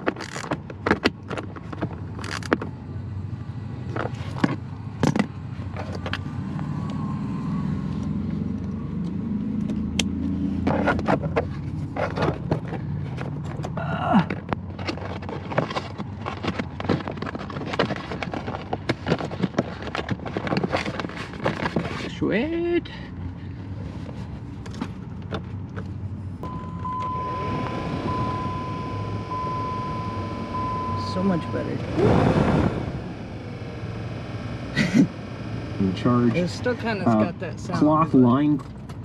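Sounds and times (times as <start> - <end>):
blower motor humming: 26.4 - 37.9.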